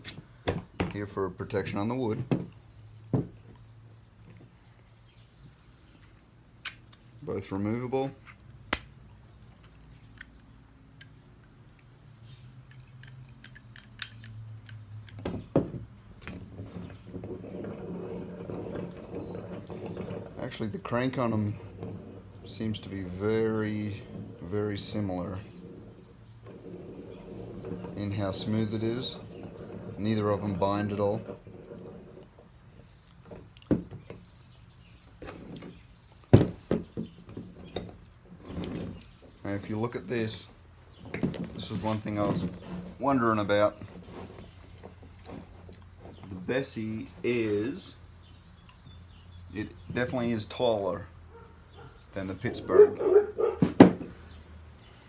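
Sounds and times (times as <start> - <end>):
metal pipe clamps clinking: 10.1 - 25.5
low metallic rattle: 12.2 - 33.3.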